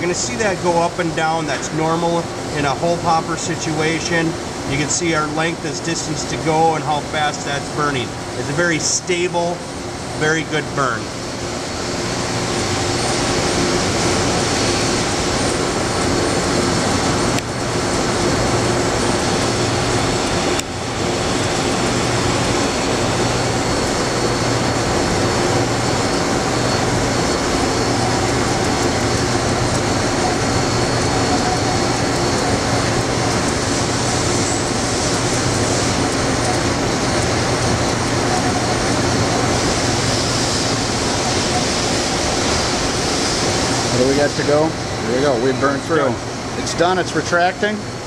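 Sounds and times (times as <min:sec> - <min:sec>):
machine and pump hum: 0:00.0 - 0:48.0
drill machine hissing: 0:11.6 - 0:46.1.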